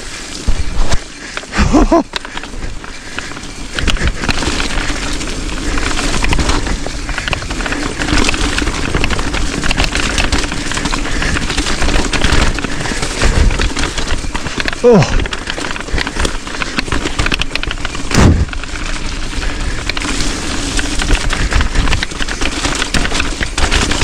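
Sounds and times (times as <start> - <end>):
bike rattling on rocky trail: 0.0 - 24.0
wind buffeting camera: 2.4 - 24.0.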